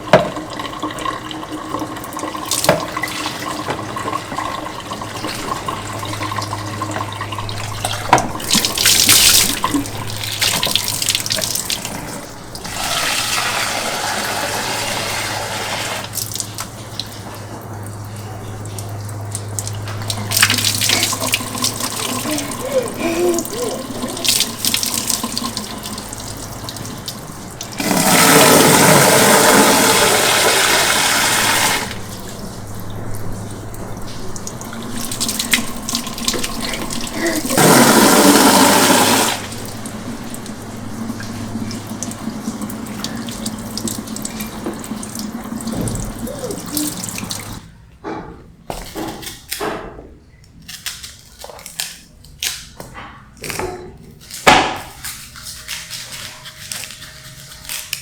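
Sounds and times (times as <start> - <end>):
tap water running into sink: 0.0 - 47.7
dishes knocking and clinking: 0.1 - 0.5, 3.6 - 4.2, 52.9 - 54.9.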